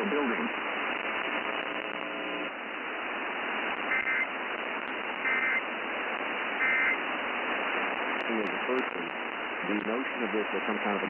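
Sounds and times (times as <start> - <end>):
radio hiss: 0.0 - 11.0
two-tone digital squawks: 3.9 - 4.3, 5.2 - 5.6, 6.6 - 7.0.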